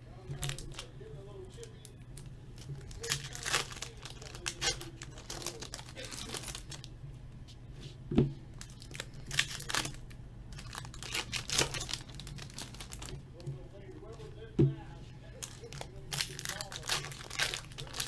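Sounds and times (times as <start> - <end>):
card packaging crinkling and tearing: 0.3 - 0.9, 1.6 - 6.9, 8.6 - 14.2, 15.3 - 18.0.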